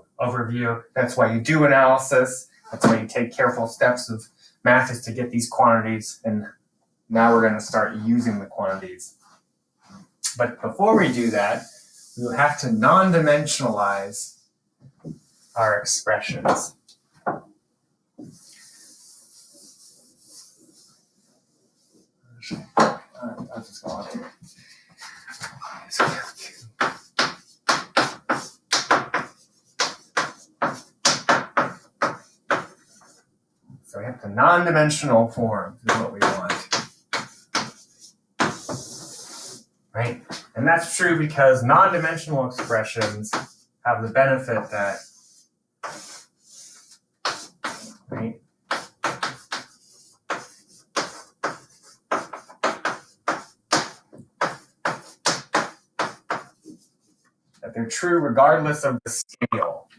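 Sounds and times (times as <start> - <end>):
scratchy writing strokes: 10.8 - 13.7, 18.2 - 21.0, 21.8 - 33.2, 35.8 - 41.0, 41.8 - 57.3.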